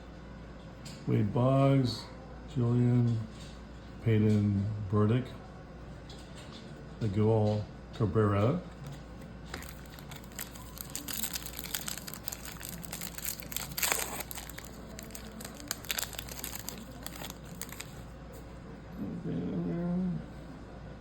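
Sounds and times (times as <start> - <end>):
foil wrapper crinkling: 9.5 - 18.0.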